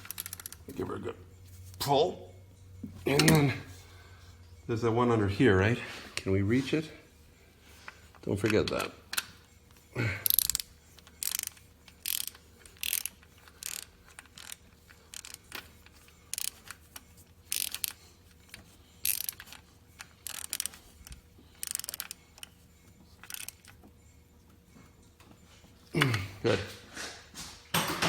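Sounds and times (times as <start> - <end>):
socket ratchet clicking: 0.0 - 0.7, 10.2 - 22.5, 23.2 - 23.8.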